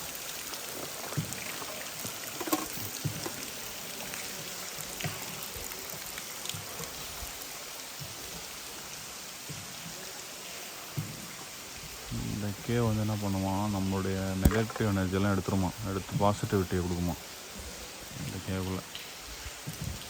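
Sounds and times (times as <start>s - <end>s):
single water drips and splashes: 0.0s - 10.2s, 14.3s - 15.2s
water trickling hiss: 0.0s - 20.0s.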